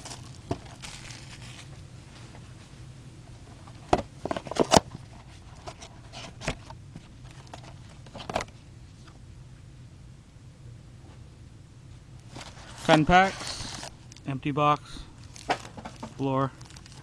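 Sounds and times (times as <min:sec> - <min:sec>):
card packaging crinkling: 0:00.0 - 0:01.8, 0:12.3 - 0:14.3, 0:15.2 - 0:17.0
low steady hum: 0:00.0 - 0:17.0.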